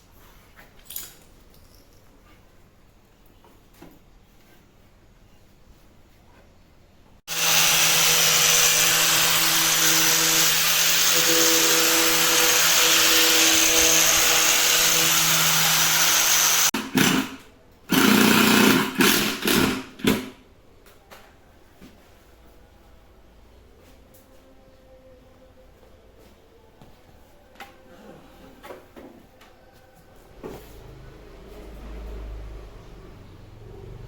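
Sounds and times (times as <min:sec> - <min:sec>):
electric power tool running: 0:07.3 - 0:17.2.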